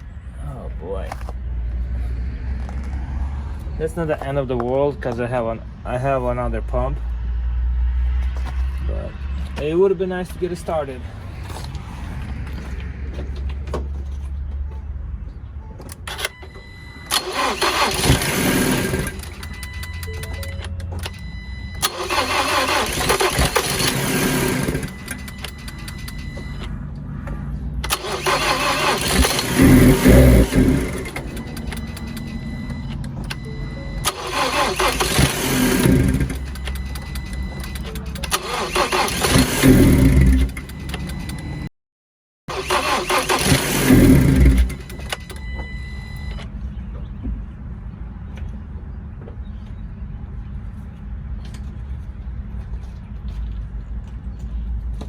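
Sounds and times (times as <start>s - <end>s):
engine cranking on starter: 17.0s - 21.2s, 21.8s - 26.6s, 27.8s - 41.7s, 42.5s - 46.4s
engine firing and revving: 17.1s - 20.0s, 21.8s - 26.6s, 27.8s - 41.7s, 42.5s - 45.4s.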